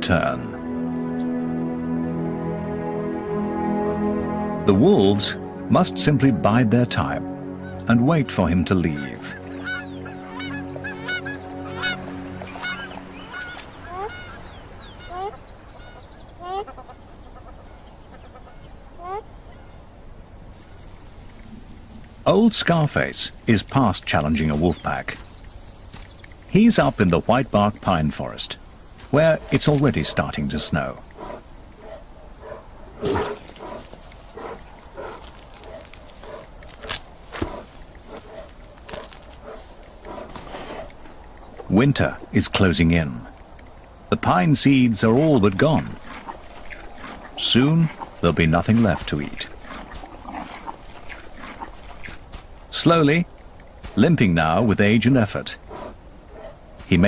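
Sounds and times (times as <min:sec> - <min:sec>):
sustained background music: 0:00.0 - 0:16.5, 0:44.1 - 0:51.2
birds calling: 0:00.0 - 0:57.0
bear vocalizing: 0:29.2 - 0:36.6.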